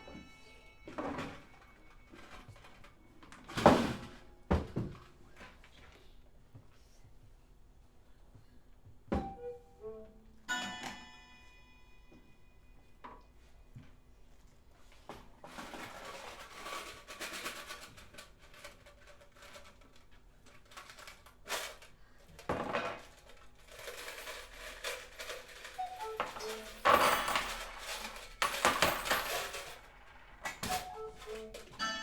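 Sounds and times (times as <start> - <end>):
metallic clattering: 22.5 - 31.8
sparse instrumental music: 30.2 - 32.0.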